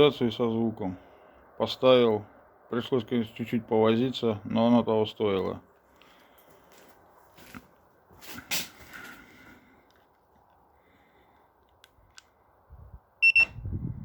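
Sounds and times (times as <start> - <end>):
quiet rustling: 5.4 - 12.4
car alarm beep: 13.2 - 13.6.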